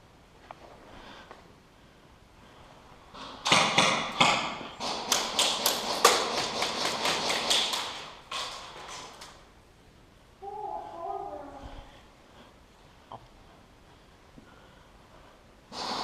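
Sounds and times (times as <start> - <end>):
rapid sharp taps and knocks: 3.4 - 9.4.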